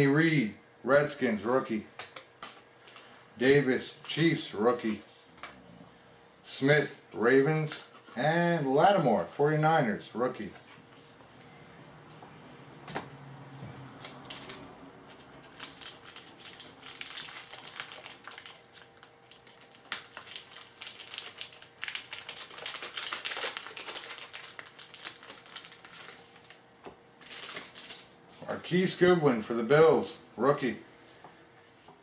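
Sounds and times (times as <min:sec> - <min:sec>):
wrapper crinkling: 0:14.0 - 0:26.6, 0:27.2 - 0:28.6.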